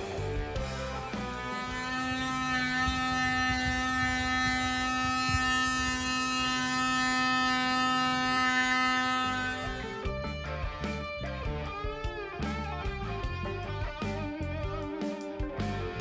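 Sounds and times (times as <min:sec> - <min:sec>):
steady tone: 0:00.0 - 0:12.0.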